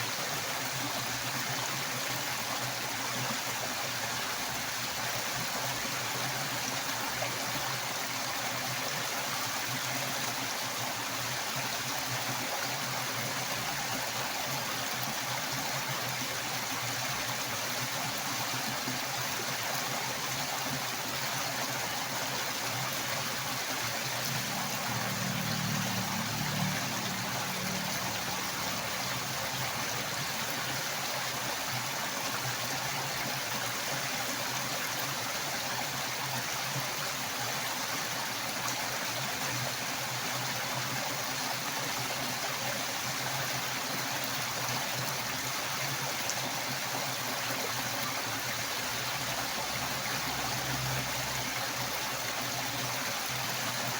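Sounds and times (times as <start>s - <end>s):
fast-flowing water rushing: 0.0s - 53.9s.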